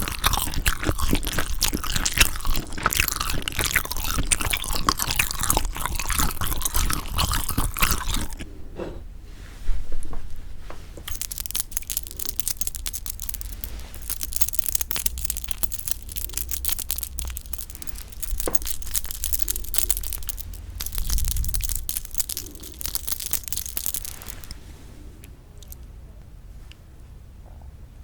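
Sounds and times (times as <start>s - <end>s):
close chewing mouth sounds: 0.0s - 8.5s, 11.0s - 24.6s.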